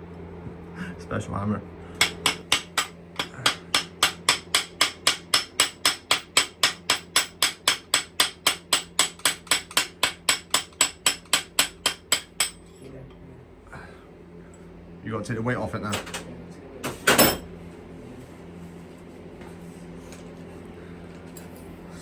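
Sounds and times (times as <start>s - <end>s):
hammer striking metal: 2.0s - 12.7s.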